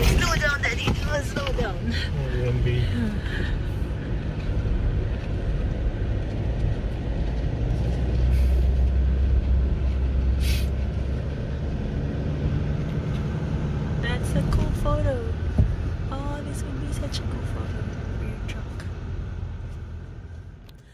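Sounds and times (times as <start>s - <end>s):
road noise: 0.0s - 20.9s
vehicle engine rumble: 0.0s - 20.9s
brief hiss: 10.4s - 10.7s.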